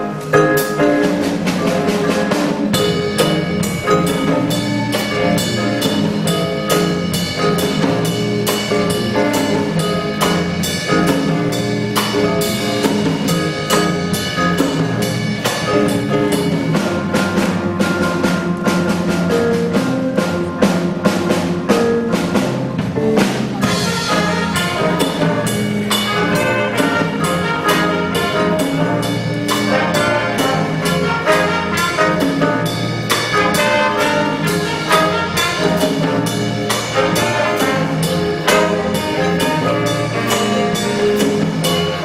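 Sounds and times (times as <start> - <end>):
drum kit beat: 0.0 - 42.0
brass horns holding notes: 23.6 - 42.0.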